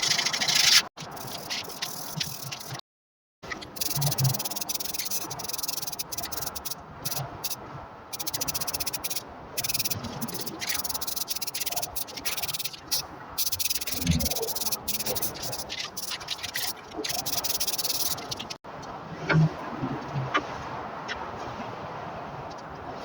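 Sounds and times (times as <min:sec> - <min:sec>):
welding arc crackling: 0:03.8 - 0:07.5, 0:08.2 - 0:18.6.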